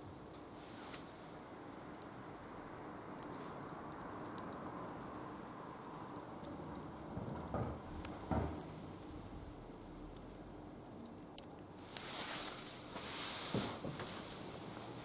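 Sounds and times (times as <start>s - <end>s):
wood fire crackling: 0.0s - 15.0s.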